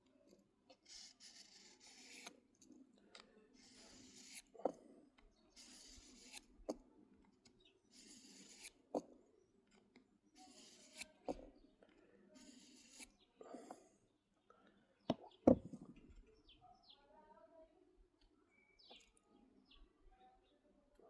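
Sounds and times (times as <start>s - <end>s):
knife sharpening scrapes: 0.8s - 2.3s, 3.6s - 4.8s, 5.6s - 6.8s, 8.0s - 8.8s, 10.4s - 11.4s, 12.4s - 13.2s.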